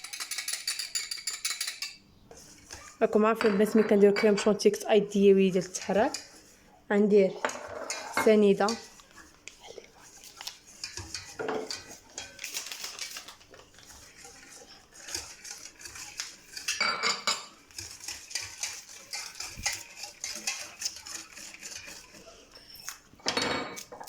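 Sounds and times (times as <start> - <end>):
metal spoon clinking on cookware: 0.0 - 2.0, 7.4 - 8.9, 10.8 - 22.2.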